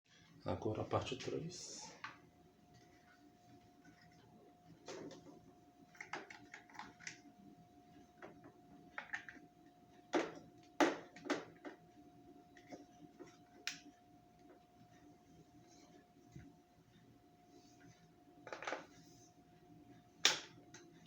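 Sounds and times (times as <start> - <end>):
faint steady hum: 0.1 - 21.0
plastic parts clicking and knocking: 5.9 - 7.2, 8.2 - 11.8, 18.4 - 18.9.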